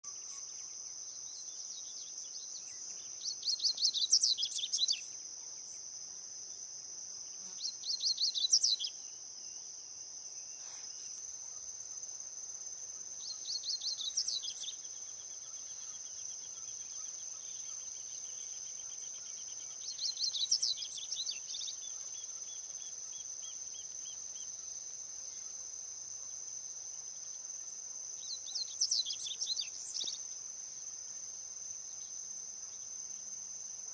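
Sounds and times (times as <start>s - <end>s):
bird singing warbled phrases: 0.1s - 5.2s, 7.6s - 9.2s, 13.2s - 24.7s, 28.2s - 30.4s.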